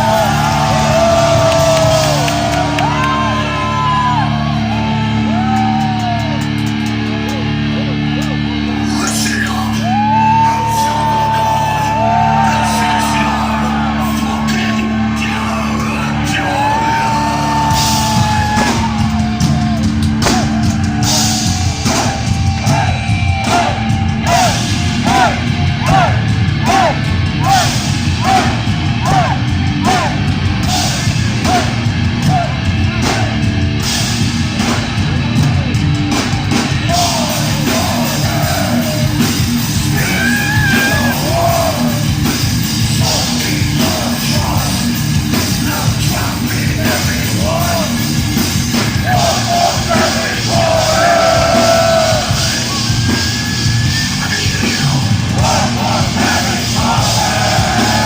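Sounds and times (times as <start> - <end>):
shouted vocals: 0.0 - 6.4, 8.7 - 33.4, 36.8 - 42.1, 48.9 - 53.2, 54.1 - 58.0
pounding drums: 0.0 - 7.4, 11.6 - 58.0
distorted guitars: 0.0 - 58.0.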